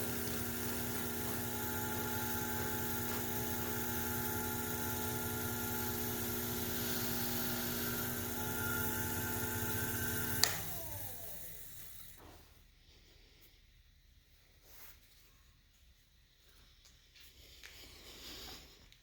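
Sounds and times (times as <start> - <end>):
electric motor humming and whining: 0.0 - 12.3
motor spinning down: 0.0 - 12.3
switch click: 10.4 - 10.7.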